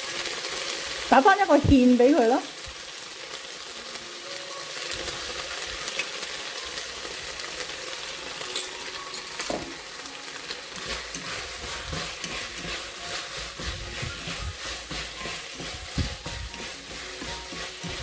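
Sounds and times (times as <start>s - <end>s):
food sizzling in a wok: 0.0s - 18.0s
spatula scraping a wok: 10.4s - 18.0s.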